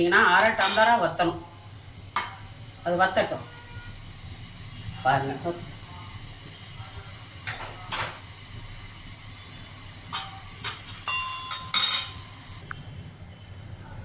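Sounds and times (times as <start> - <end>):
water simmering in a pan: 0.0 - 12.7
utensil clinking against pan: 0.4 - 1.0, 10.1 - 12.3.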